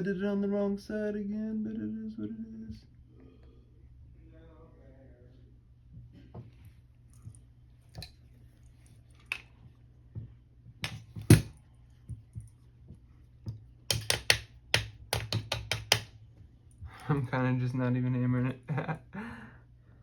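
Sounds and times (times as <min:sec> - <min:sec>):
hammer tapping on punch: 0:13.5 - 0:16.1.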